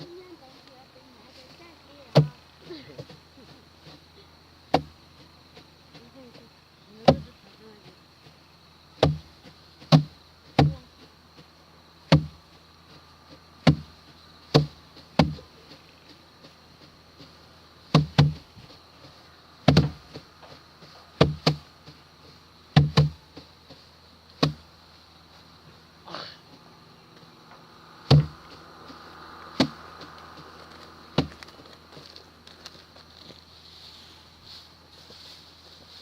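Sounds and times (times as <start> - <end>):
sheaves knocking on wooden board: 4.7 - 6.0, 7.0 - 7.3, 9.0 - 11.5, 12.1 - 24.7, 27.2 - 33.4.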